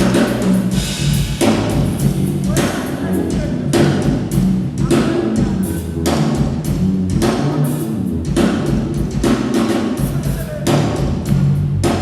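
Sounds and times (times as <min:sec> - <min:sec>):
sustained low notes: 0:00.0 - 0:09.6.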